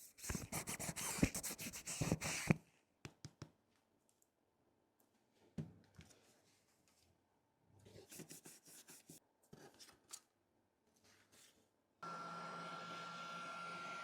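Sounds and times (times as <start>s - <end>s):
electric tool hissing and whining: 12.0s - 14.0s.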